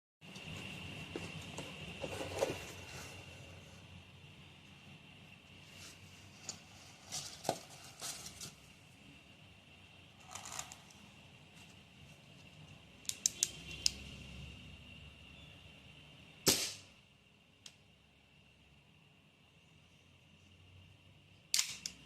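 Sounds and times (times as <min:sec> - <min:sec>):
metal pistol clicks: 0:21.5 - 0:22.0.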